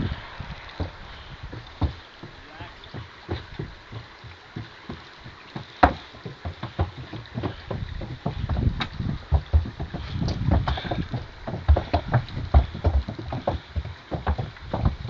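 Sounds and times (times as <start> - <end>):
horse hooves on bridge: 0.0 - 15.0.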